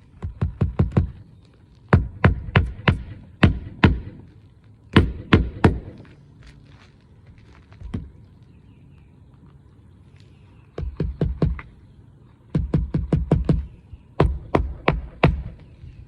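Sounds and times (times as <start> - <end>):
hammer striking roofing nails: 0.2 - 1.2, 1.9 - 4.3, 4.9 - 6.0, 10.8 - 11.7, 12.5 - 15.6.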